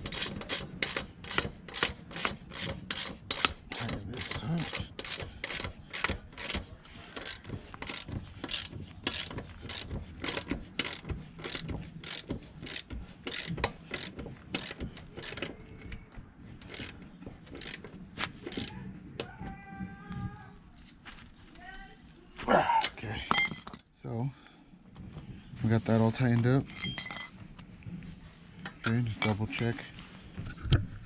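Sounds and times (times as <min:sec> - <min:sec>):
ratchet wrench clicking: 0:07.2 - 0:15.4, 0:18.5 - 0:18.7.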